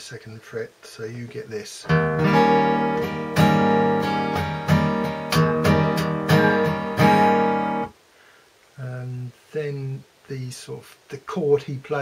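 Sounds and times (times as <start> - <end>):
acoustic guitar strumming chord: 1.9 - 7.9.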